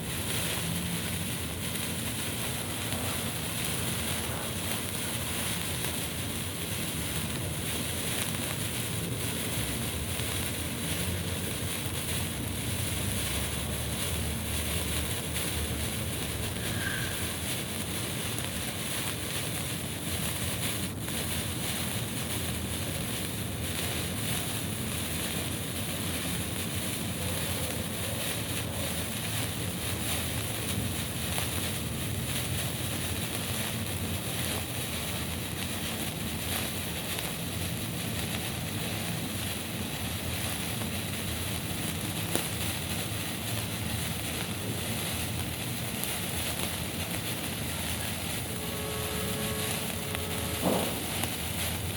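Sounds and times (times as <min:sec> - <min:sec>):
signal flare hissing: 0:00.0 - 0:51.9
sharp crack: 0:45.9 - 0:51.9.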